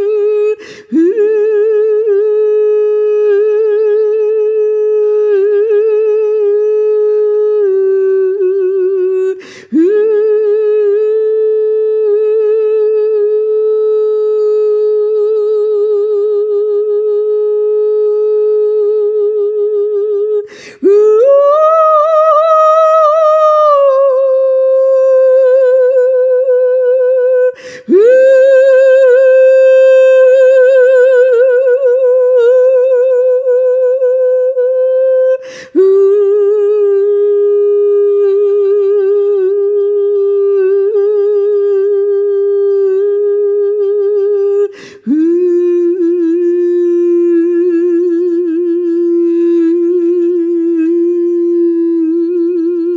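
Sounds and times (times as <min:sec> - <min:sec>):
woman singing wordless held notes: 0:00.0 - 0:52.9
woman breathing: 0:00.6 - 0:01.0, 0:09.4 - 0:09.8, 0:20.5 - 0:20.8, 0:27.6 - 0:27.9, 0:35.4 - 0:35.8, 0:44.7 - 0:45.1.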